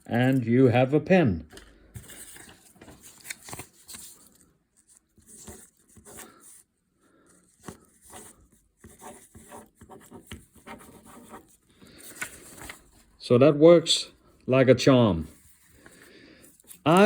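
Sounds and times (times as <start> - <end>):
pen scratching on paper: 7.6 - 11.6.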